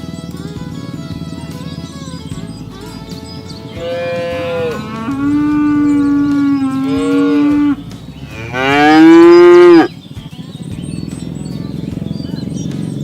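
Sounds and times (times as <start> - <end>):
cattle mooing: 3.7 - 9.9.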